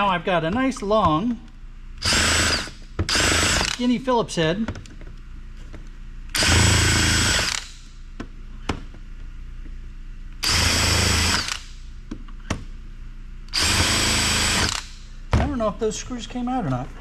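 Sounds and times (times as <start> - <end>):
power drill whirring: 2.0 - 3.8, 6.3 - 7.8, 10.4 - 11.7, 13.5 - 15.0.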